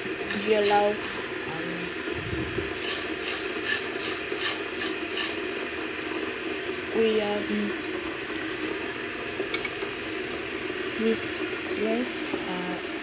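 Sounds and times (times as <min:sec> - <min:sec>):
spatula scraping rice in a pan: 0:00.0 - 0:01.2, 0:02.8 - 0:05.7.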